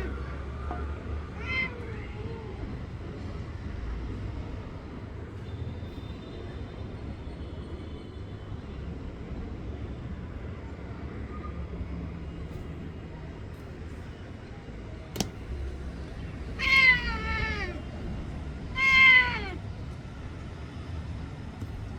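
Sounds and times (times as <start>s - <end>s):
cat meowing: 1.3s - 2.7s, 16.5s - 18.0s, 18.7s - 19.6s
sharp click: 15.2s - 15.4s.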